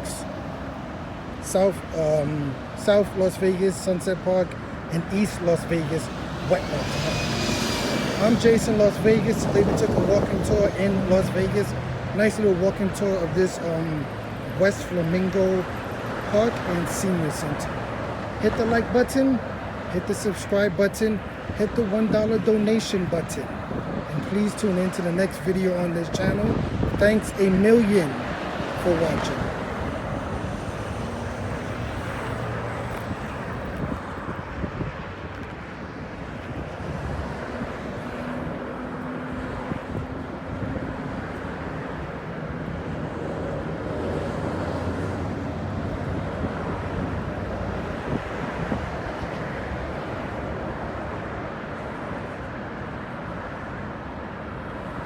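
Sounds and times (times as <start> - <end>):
road traffic hum: 0.0 - 55.0
wind on microphone: 4.7 - 12.0, 23.5 - 25.0, 26.0 - 38.8.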